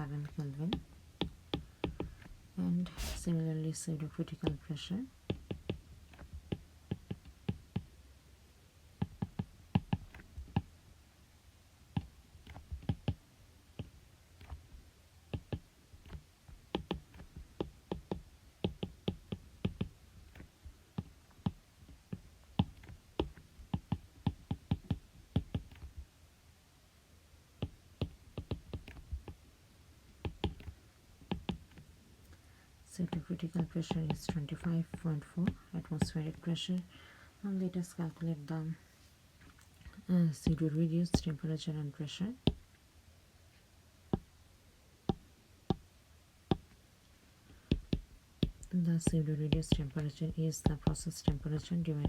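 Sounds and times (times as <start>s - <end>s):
faint low hum: 0.0s - 52.0s.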